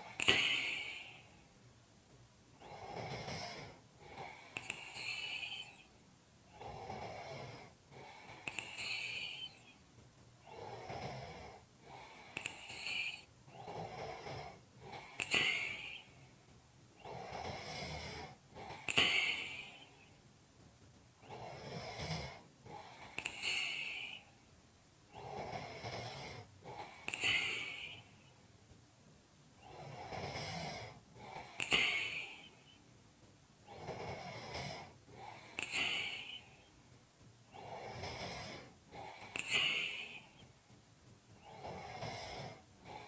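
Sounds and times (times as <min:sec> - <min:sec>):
person snoring: 0:00.0 - 0:01.4, 0:02.6 - 0:05.9, 0:06.5 - 0:09.8, 0:10.4 - 0:16.2, 0:17.0 - 0:20.1, 0:21.2 - 0:24.3, 0:25.1 - 0:28.1, 0:29.6 - 0:32.8, 0:33.6 - 0:36.7, 0:37.5 - 0:40.5, 0:41.4 - 0:43.0.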